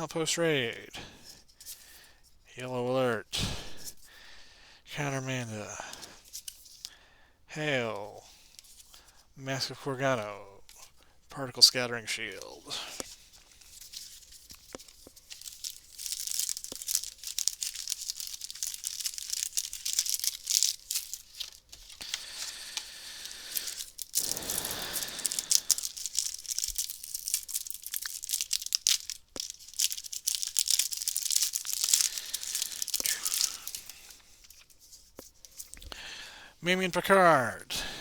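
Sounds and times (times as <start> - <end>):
wrapper crinkling and tearing: 12.2 - 35.9.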